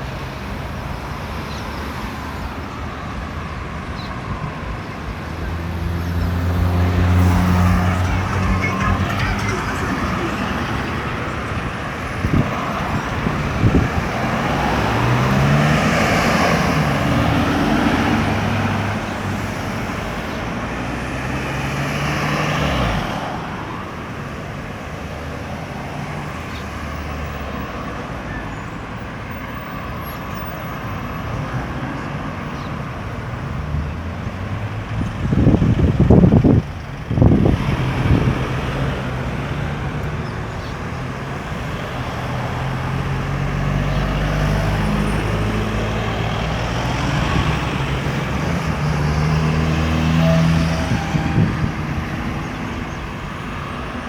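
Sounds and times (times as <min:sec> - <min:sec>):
road traffic passing: 0:00.0 - 0:54.0
engines pulling away: 0:04.5 - 0:23.9, 0:30.8 - 0:54.0
loud vehicle passing close: 0:05.4 - 0:19.6.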